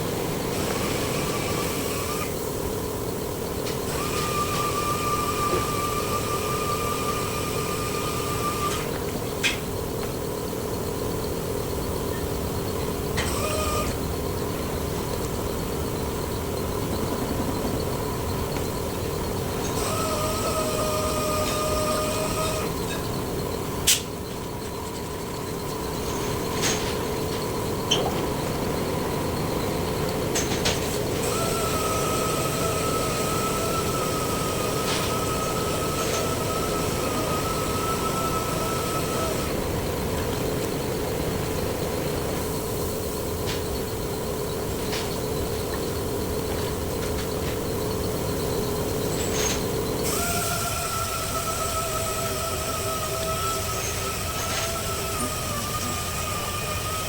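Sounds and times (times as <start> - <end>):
high whine: 0.0 - 57.0
power tool running: 3.9 - 9.0, 13.2 - 14.5, 19.4 - 23.2, 31.0 - 40.7, 49.3 - 57.0.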